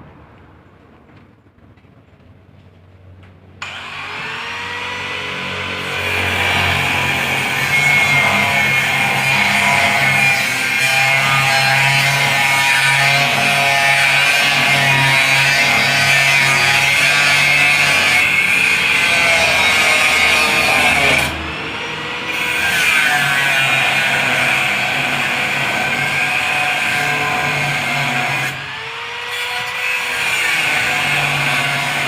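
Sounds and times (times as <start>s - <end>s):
grinder motor whine: 3.6s - 11.3s
grinder grinding steel: 3.6s - 32.0s.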